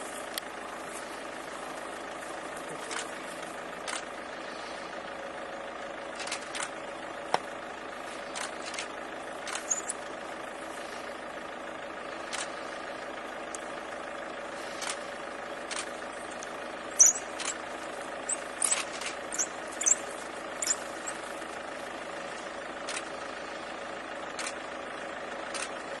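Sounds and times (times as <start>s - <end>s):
vehicle engine idling: 0.0s - 26.0s
sharp clicks: 6.2s - 6.8s, 8.3s - 10.0s, 12.3s - 12.6s, 15.7s - 17.6s, 18.3s - 21.2s
short high-pitched chirps: 9.6s - 10.0s, 17.0s - 17.4s, 18.3s - 20.0s, 20.6s - 21.2s.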